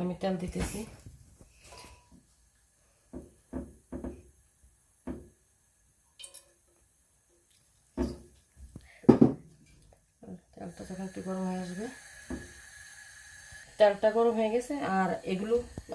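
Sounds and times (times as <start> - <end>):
cookware knocks and clunks: 3.2 - 4.2, 8.0 - 8.3, 9.1 - 9.5.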